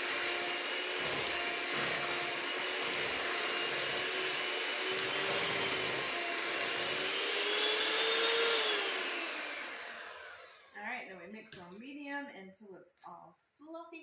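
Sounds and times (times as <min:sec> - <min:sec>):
electric mixer whining: 0:00.0 - 0:10.8.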